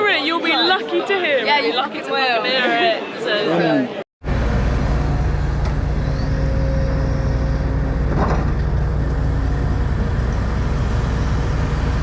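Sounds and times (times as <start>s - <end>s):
engine humming: 4.2s - 12.0s.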